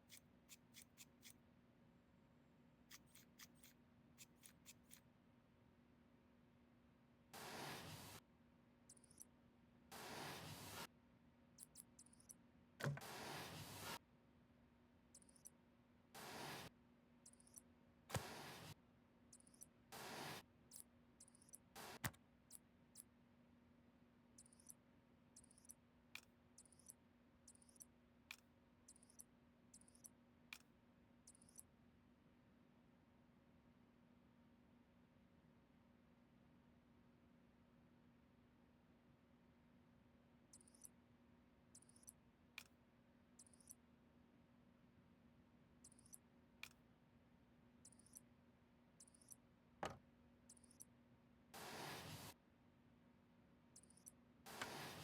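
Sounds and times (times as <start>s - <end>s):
faint small clicks and ticks: 0.0s - 1.4s, 8.9s - 9.3s, 11.6s - 13.0s, 15.1s - 15.6s, 17.2s - 18.3s, 19.3s - 19.8s, 20.7s - 23.1s, 24.4s - 24.8s, 25.4s - 31.7s, 40.5s - 41.0s, 41.7s - 42.8s, 43.4s - 43.8s, 45.8s - 46.8s, 47.8s - 48.3s, 49.0s - 49.5s, 50.5s - 50.9s, 53.8s - 54.8s.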